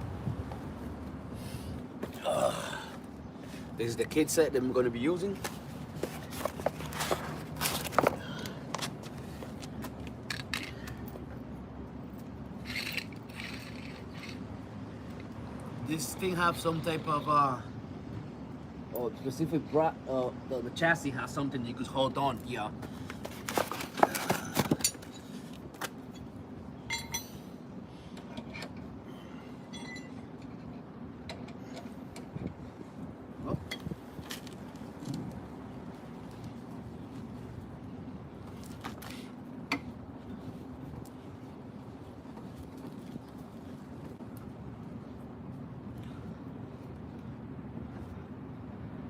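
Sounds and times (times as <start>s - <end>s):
low background hum: 0.0s - 49.0s
ringing metal clinks: 26.9s - 27.4s, 29.7s - 30.3s.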